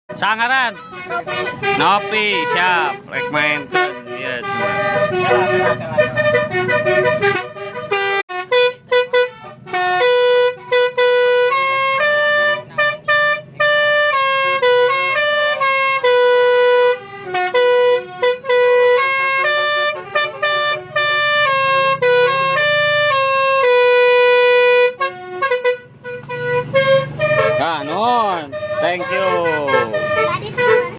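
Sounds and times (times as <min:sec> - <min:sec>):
musical air horn melody: 0:00.6 - 0:30.9.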